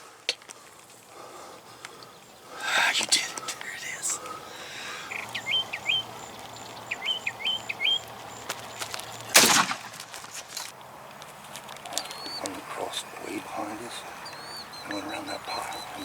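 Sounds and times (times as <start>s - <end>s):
small bird chirping: 0.3s - 16.0s
loud rustling: 8.0s - 12.0s.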